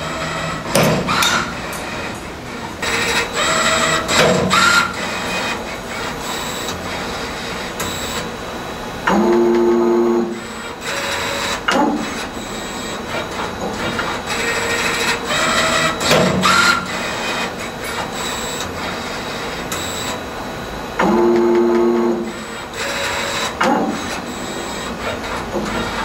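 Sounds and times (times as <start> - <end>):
servo whine: 0.0 - 26.0
machine clicks and knocks: 0.7 - 2.3, 4.0 - 4.8, 16.0 - 16.7.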